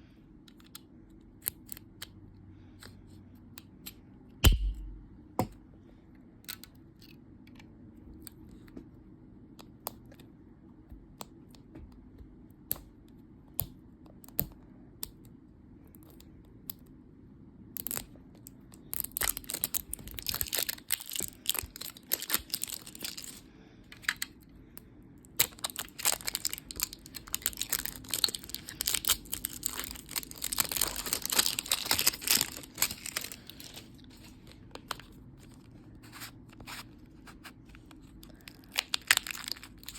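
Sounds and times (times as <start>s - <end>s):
packaging tearing and crinkling: 19.0s - 23.4s, 25.4s - 33.9s, 38.0s - 39.9s.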